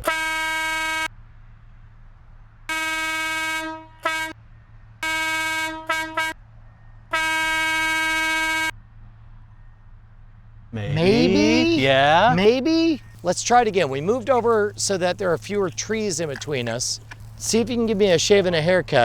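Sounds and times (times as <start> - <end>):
truck air horn honks: 0.0 - 1.1, 2.7 - 4.4, 5.0 - 6.4, 7.1 - 8.7.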